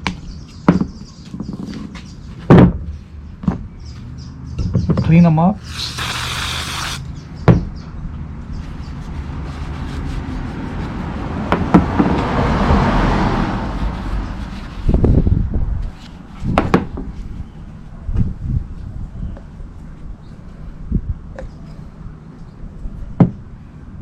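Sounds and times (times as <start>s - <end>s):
rushing hiss: 5.6s - 7.0s.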